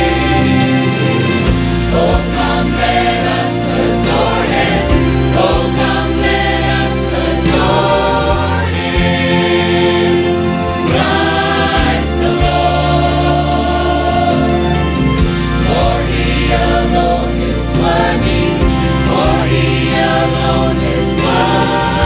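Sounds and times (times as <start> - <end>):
choir singing: 0.0 - 22.0
low instrumental chords: 0.0 - 22.0.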